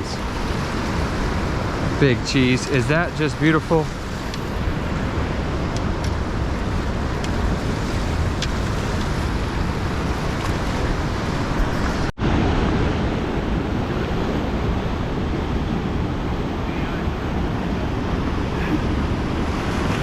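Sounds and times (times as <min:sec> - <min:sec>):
river water rushing: 0:00.0 - 0:15.2
wind on microphone: 0:00.0 - 0:20.0.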